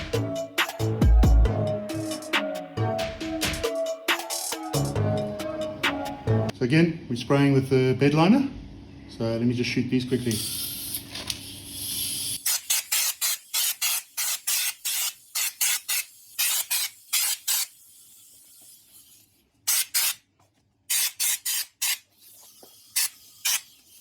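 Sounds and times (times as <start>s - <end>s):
spray hissing bursts: 10.3s - 20.2s.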